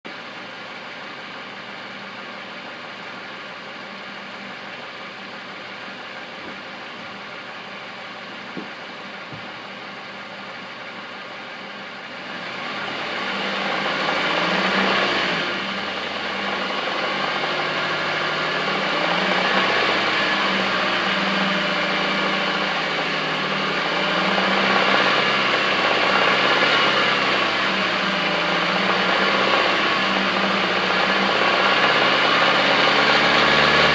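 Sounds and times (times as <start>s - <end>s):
car engine idling: 0.1s - 33.9s
engine revving and knocking: 12.2s - 33.9s.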